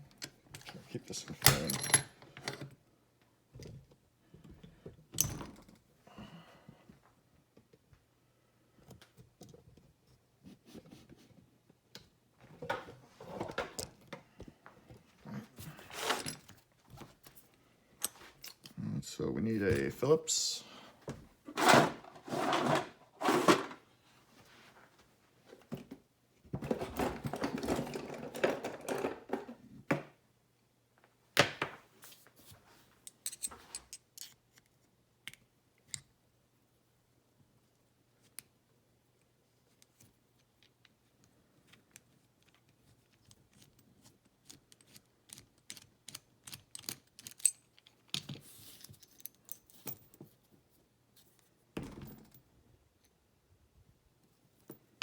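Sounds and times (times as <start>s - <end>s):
rustling rummaging: 21.2s - 29.7s.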